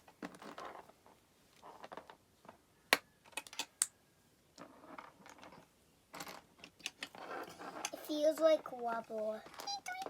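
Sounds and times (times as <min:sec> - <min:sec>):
plastic toy bricks clicking: 0:02.9 - 0:03.9, 0:07.8 - 0:10.0.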